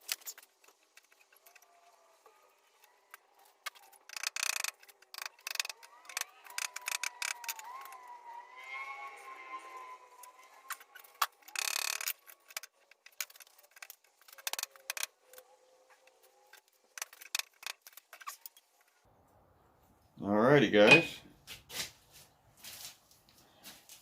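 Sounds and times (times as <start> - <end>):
wavering squeal: 5.3 - 12.6
steel tools clinking: 20.8 - 21.2.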